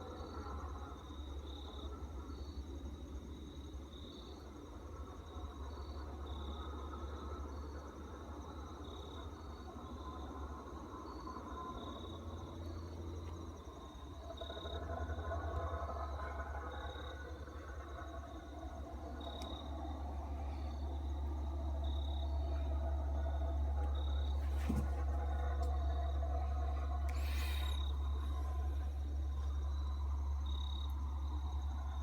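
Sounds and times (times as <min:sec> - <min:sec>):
faint low rumble: 0:00.0 - 0:32.0
high insect-like chirp: 0:00.0 - 0:32.0
steady low hum: 0:00.0 - 0:32.0.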